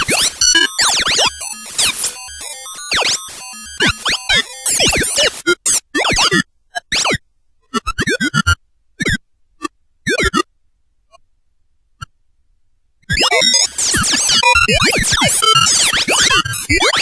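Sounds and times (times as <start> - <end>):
electronic chirps and bleeps: 0.0 - 5.4, 13.1 - 17.0.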